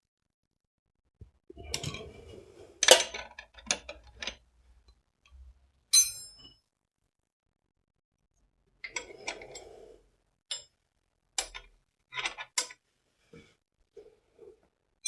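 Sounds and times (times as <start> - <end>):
bright ringing metal clink: 6.0 - 6.5.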